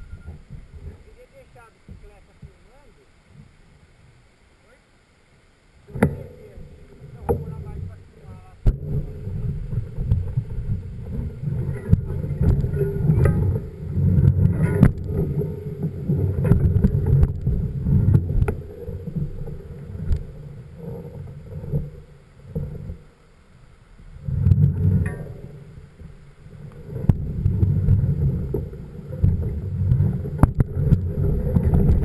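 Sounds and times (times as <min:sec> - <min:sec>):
wind buffeting microphone: 0:05.9 - 0:23.1, 0:24.1 - 0:32.0.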